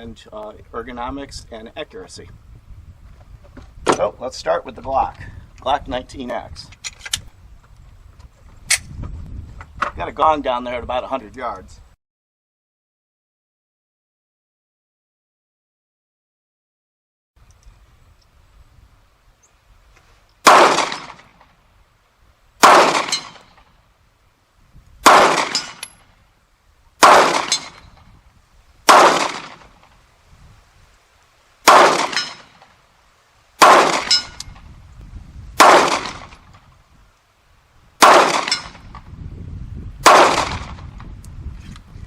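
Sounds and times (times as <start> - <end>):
pistol shots: 20.4 - 21.4, 22.6 - 23.7, 25.0 - 26.0, 27.0 - 28.0, 28.8 - 29.8, 31.6 - 32.6, 33.6 - 34.5, 35.6 - 36.4, 38.0 - 38.9, 40.0 - 40.8.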